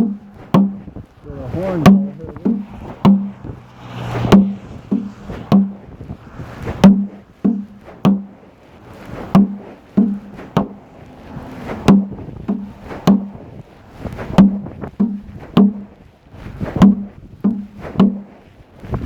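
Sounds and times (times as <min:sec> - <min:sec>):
sharp knocks with low ring: 0:00.0 - 0:00.8, 0:09.3 - 0:10.8, 0:16.8 - 0:18.2.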